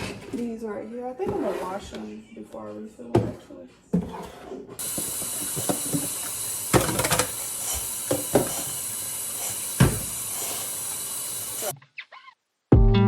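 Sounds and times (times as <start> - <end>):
faucet running into sink: 4.8 - 11.7.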